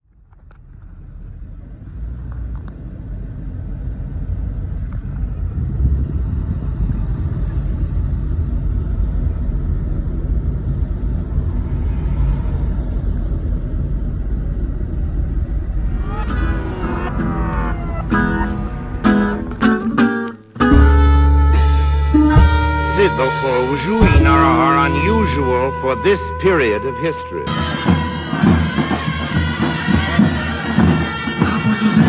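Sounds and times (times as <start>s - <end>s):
car rumbling on road: 0.0s - 32.0s
plucked guitar music: 15.9s - 26.0s.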